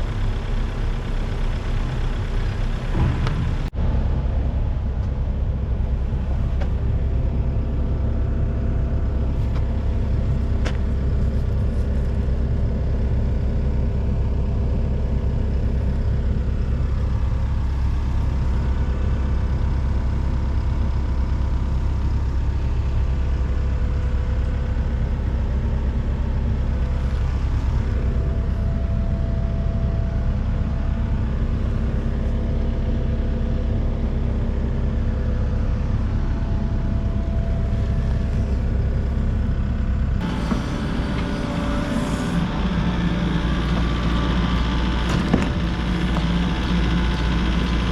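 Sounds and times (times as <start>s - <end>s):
excavator diesel engine droning: 0.0s - 47.9s.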